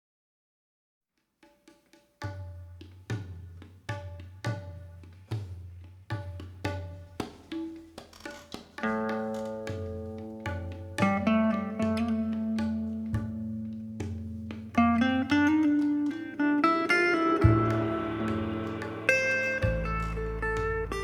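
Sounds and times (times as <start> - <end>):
tabla strokes: 1.4 - 21.0
sustained chord: 17.4 - 21.0.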